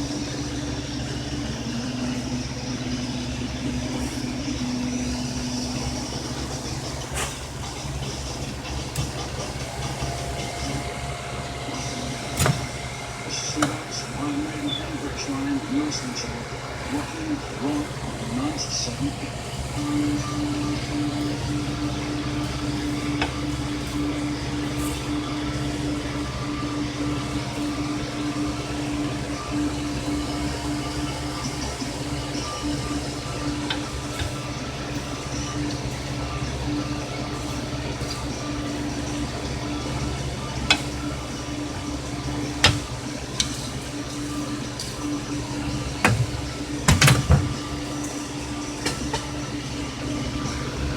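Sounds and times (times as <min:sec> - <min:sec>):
electric blower humming: 0:00.0 - 0:50.9.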